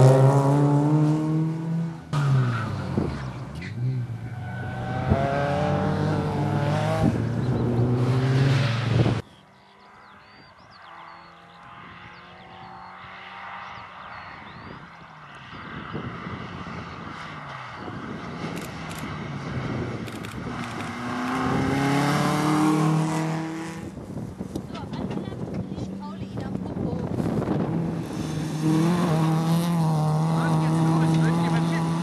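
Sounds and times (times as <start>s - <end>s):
car engine revving: 0.0s - 9.2s, 16.0s - 24.1s, 25.3s - 32.0s.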